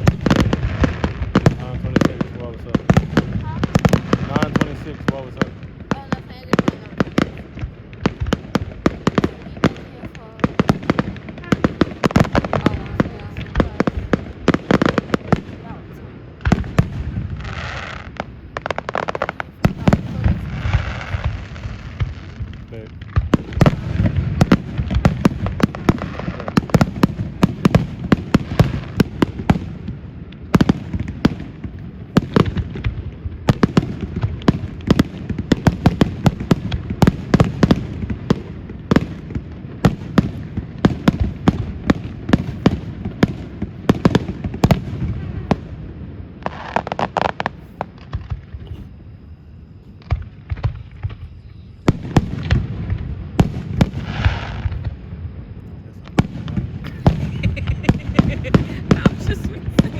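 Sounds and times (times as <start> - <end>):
fireworks bursting: 0.0 - 59.9.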